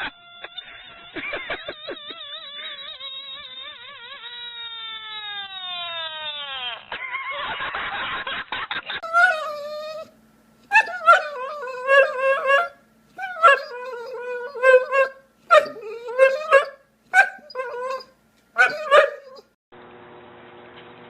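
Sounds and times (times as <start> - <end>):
dog howling: 9.0 - 10.1, 10.7 - 19.6.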